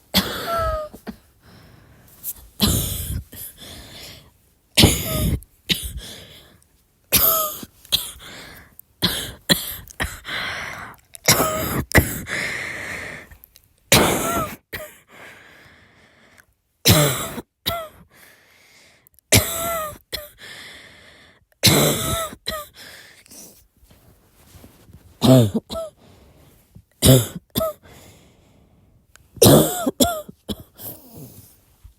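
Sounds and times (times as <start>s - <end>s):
woman coughing: 0.1s - 1.3s, 2.6s - 3.5s, 4.8s - 6.1s, 7.1s - 8.2s, 9.0s - 10.3s, 11.3s - 12.3s, 13.9s - 15.0s, 16.9s - 18.0s, 19.4s - 20.3s, 21.6s - 22.8s, 25.2s - 26.0s, 27.0s - 27.8s, 29.4s - 31.4s.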